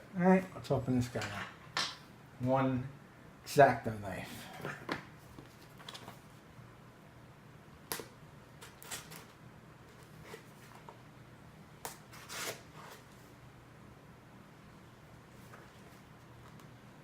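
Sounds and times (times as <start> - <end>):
knife cutting cardboard box: 12.1 - 13.0.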